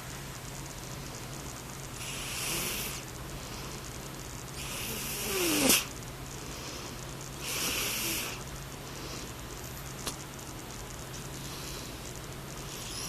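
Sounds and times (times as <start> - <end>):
cat snoring: 2.0 - 3.1, 4.6 - 5.9, 7.4 - 8.4, 12.6 - 13.0.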